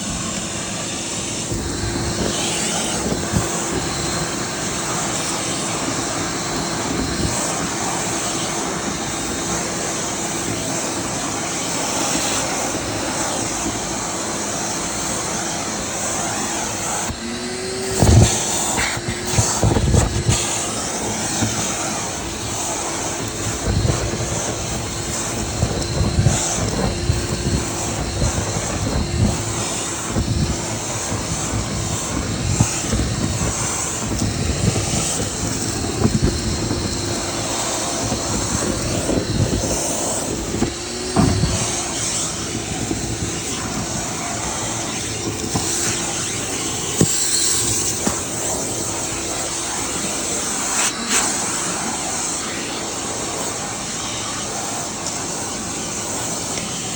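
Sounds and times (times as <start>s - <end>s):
vent cleaning machine humming: 0.0s - 56.9s
low thumps and knocks: 40.4s - 44.0s.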